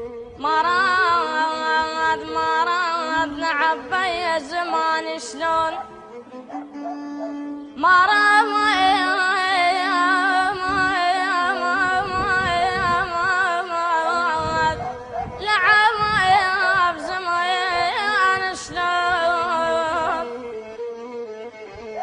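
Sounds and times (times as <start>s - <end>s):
child singing: 0.4s - 5.9s, 7.8s - 14.8s, 15.4s - 20.4s.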